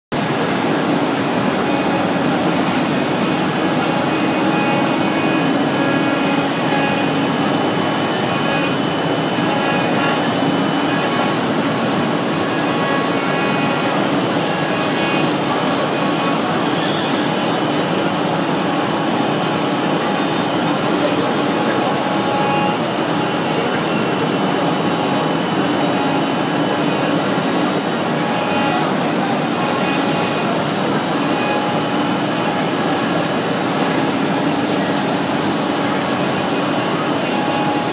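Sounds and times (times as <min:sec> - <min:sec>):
cnc wood router running: 0:00.2 - 0:37.9
high machine tones: 0:00.2 - 0:37.9.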